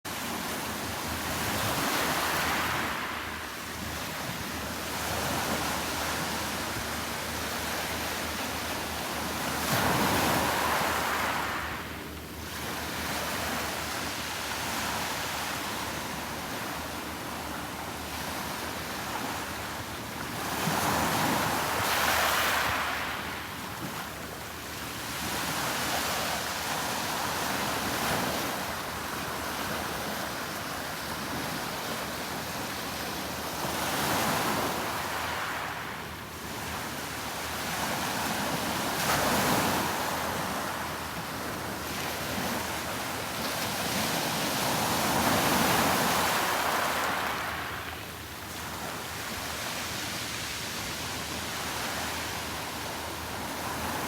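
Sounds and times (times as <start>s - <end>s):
sea surf washing onto beach: 20.2s - 54.0s.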